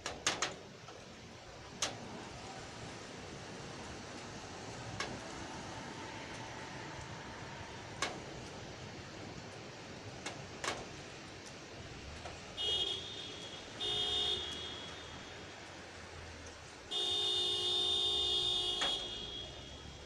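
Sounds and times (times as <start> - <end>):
car horn honking: 12.6 - 15.5, 16.9 - 20.0.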